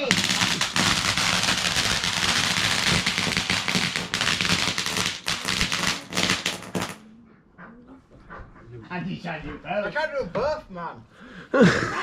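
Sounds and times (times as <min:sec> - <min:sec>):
firework crackling: 0:00.0 - 0:07.0.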